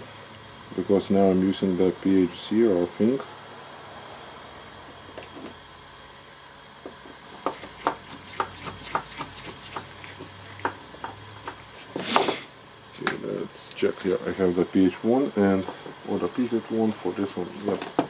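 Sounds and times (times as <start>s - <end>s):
hand tools clicking and tapping: 7.4s - 11.6s.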